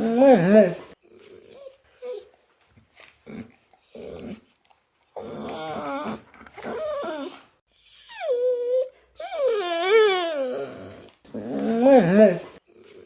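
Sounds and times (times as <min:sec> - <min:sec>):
dog whining: 0:00.0 - 0:02.4, 0:05.2 - 0:13.0.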